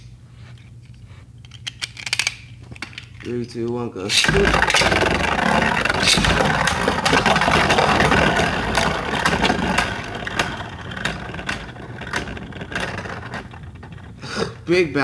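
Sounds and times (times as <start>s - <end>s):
spinning tops clashing: 4.1s - 14.2s
spinning tops whirring: 4.1s - 14.3s.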